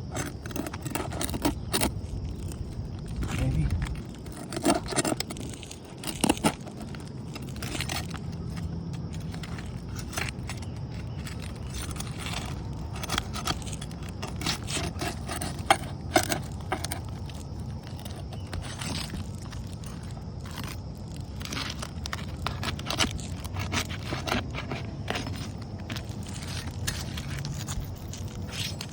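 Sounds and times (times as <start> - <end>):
scraping on shingles: 0.0 - 28.9
steady low rumble: 1.6 - 4.6.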